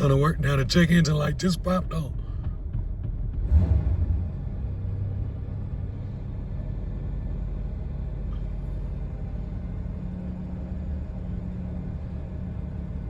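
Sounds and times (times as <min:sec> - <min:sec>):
car engine idling unevenly: 0:00.0 - 0:03.7.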